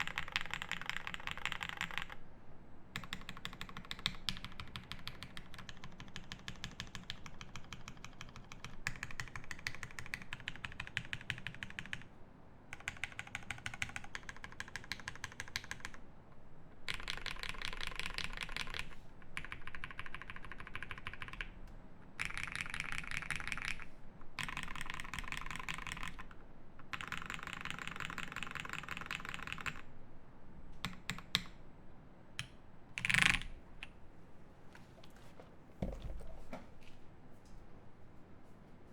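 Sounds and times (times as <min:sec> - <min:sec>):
mechanical keyboard typing: 0:00.0 - 0:02.2, 0:03.0 - 0:12.1, 0:12.7 - 0:16.0, 0:16.9 - 0:21.5, 0:22.2 - 0:29.8, 0:33.0 - 0:33.5.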